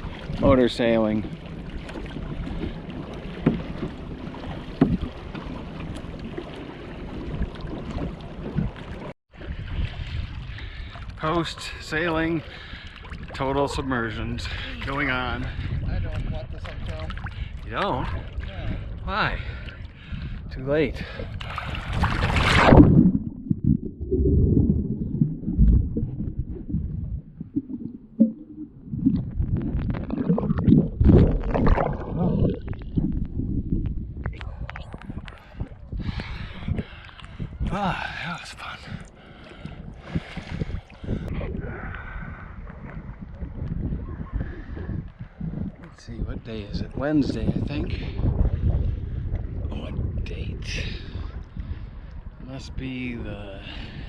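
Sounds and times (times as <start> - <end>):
water splashing against hull: 0.0 - 54.0
wind buffeting microphone: 0.0 - 54.0
muffled underwater gurgling: 21.8 - 38.2, 38.9 - 52.4.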